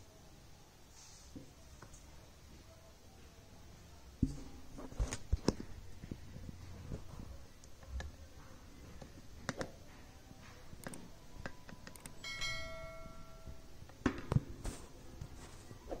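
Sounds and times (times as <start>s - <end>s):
bell-like ring: 12.2s - 13.7s.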